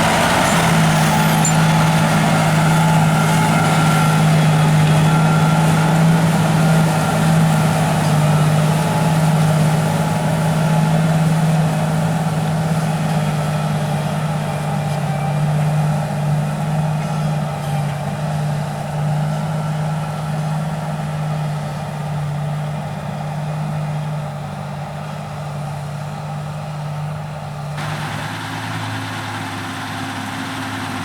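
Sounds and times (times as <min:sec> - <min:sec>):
tractor diesel engine running: 0:00.0 - 0:31.0.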